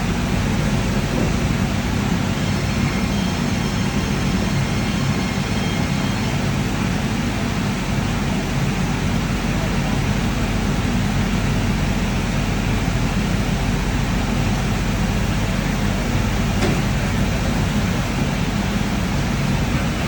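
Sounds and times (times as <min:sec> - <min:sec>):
machining center hum and whir: 0:00.0 - 0:20.0.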